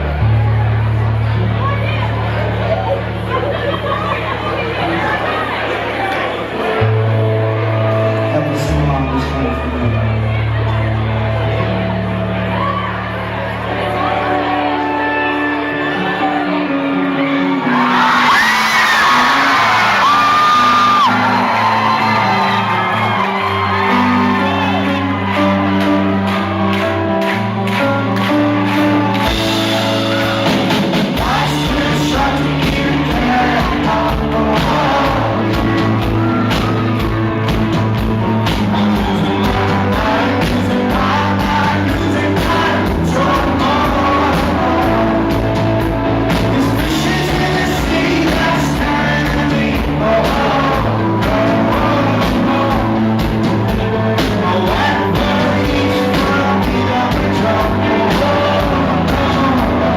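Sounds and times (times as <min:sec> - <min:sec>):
rock band playing live: 0:00.0 - 0:59.9
lead vocal singing: 0:17.2 - 0:26.6, 0:29.3 - 0:59.9.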